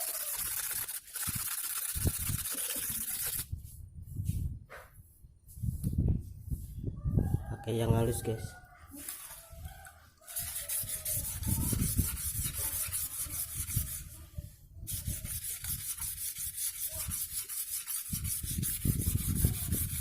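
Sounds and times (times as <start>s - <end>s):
sickle blade scraping on whetstone: 10.3s - 14.1s, 14.9s - 19.2s.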